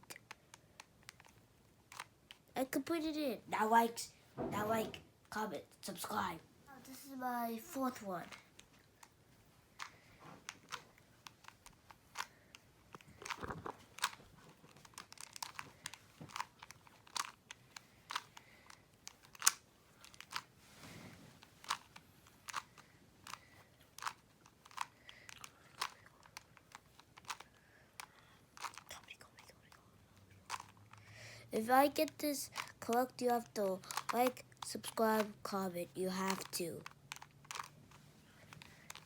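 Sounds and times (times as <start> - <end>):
puzzle cube clicking: 0.1 - 2.5, 9.8 - 20.5, 21.4 - 29.8, 30.4 - 39.0
soft handling rustle: 5.9 - 39.0.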